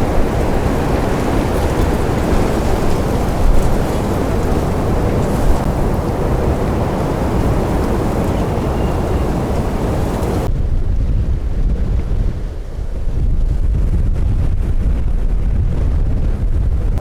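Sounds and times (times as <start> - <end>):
wind rushing hiss: 0.0 - 10.5
wind low rumble on microphone: 0.0 - 17.0.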